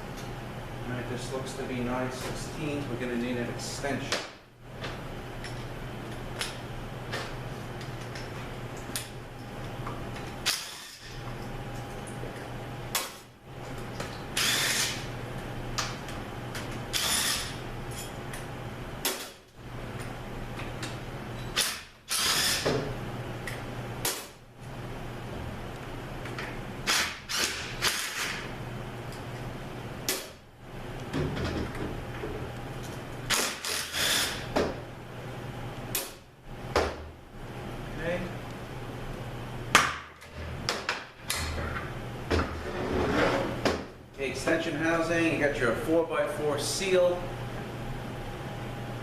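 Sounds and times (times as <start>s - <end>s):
steady low hum: 0.0s - 49.0s.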